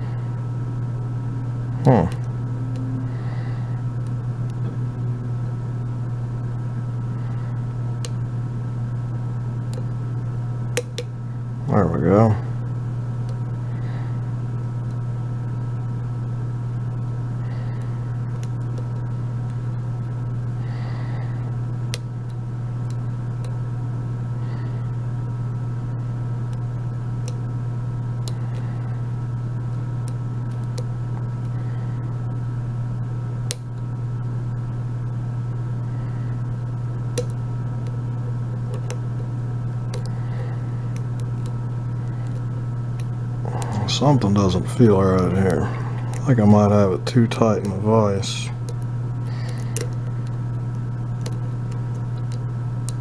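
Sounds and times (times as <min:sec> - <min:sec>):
low steady hum: 0:00.0 - 0:53.0
lock pick clicks: 0:49.5 - 0:50.0.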